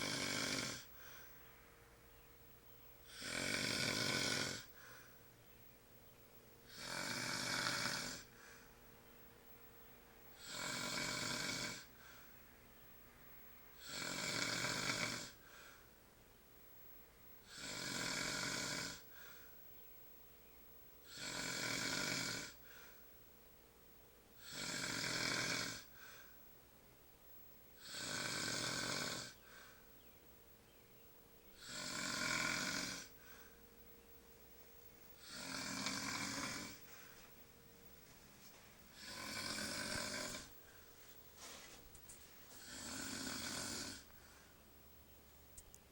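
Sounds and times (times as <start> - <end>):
man snoring: 0.0 - 1.0, 3.0 - 4.8, 6.7 - 8.3, 10.4 - 12.0, 13.8 - 15.4, 17.4 - 19.3, 21.0 - 22.6, 24.4 - 26.0, 27.8 - 29.5, 31.6 - 33.5, 35.2 - 37.0, 38.9 - 40.8, 42.5 - 44.2
quiet breaths: 0.0 - 45.9.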